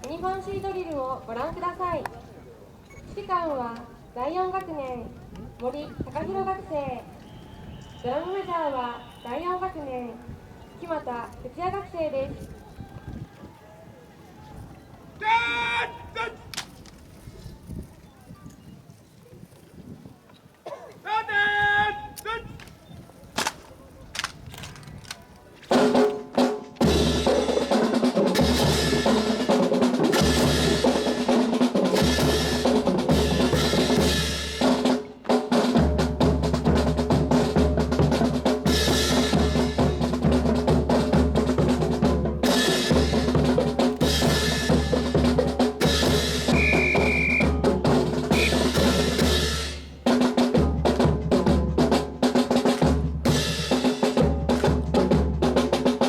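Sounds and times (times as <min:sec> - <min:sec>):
marching snare and bass drums: 0:24.2 - 0:56.0.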